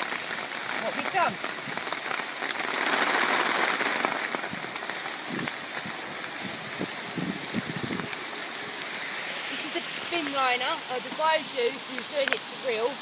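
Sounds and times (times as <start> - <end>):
heavy rain pattering: 0.0 - 13.0.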